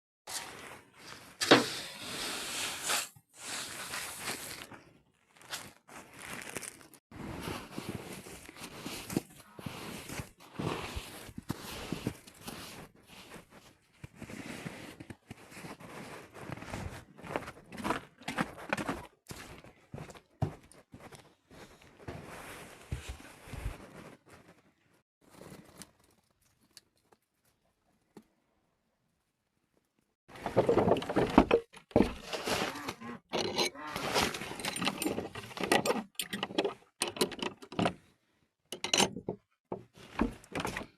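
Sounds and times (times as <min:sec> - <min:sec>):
crunching and rustling: 0:03.4 - 0:19.7, 0:25.2 - 0:27.7, 0:30.3 - 0:33.2.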